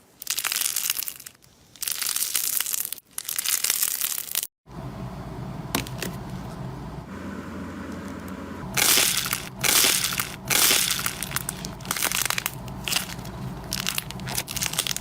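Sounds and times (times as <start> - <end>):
slime crackling and crunching: 0.1 - 4.5, 8.8 - 15.0
low hum: 4.7 - 15.0.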